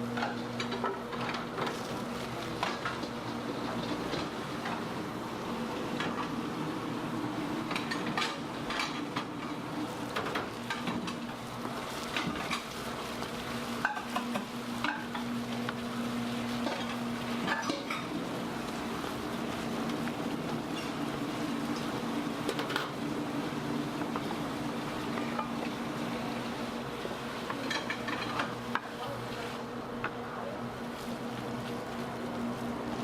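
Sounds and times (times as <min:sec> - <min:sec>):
metal tongs and pans clinking: 0:27.5 - 0:28.5.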